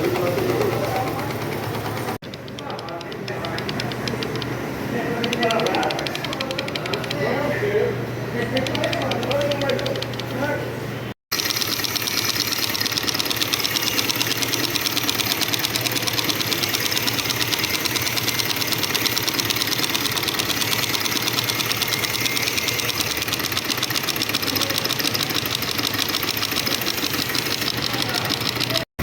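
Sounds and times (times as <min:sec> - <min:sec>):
motorcycle engine running: 0:00.0 - 0:02.8, 0:11.3 - 0:28.8
metallic clutch ticking: 0:00.0 - 0:07.4, 0:08.5 - 0:10.3, 0:11.3 - 0:28.9.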